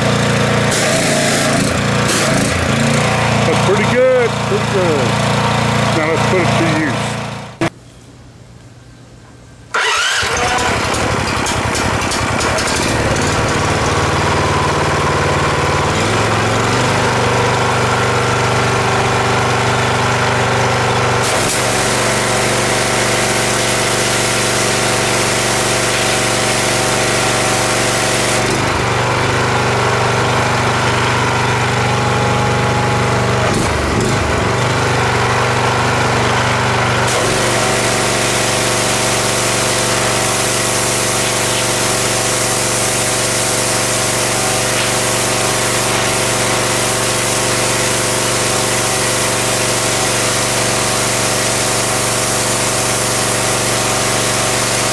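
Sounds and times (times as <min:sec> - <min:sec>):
pressure washer engine running: 0:00.0 - 0:07.7, 0:09.7 - 0:54.9
loud hiss: 0:37.1 - 0:54.9.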